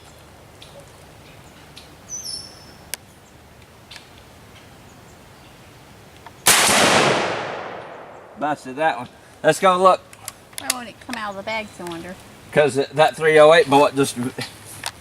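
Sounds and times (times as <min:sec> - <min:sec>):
rifle shot: 0:06.4 - 0:08.4.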